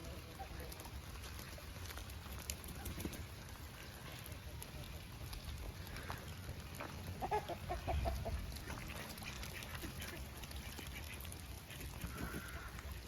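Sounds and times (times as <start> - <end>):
rain pattering: 0.0 - 13.0
ducks quacking: 5.9 - 13.0.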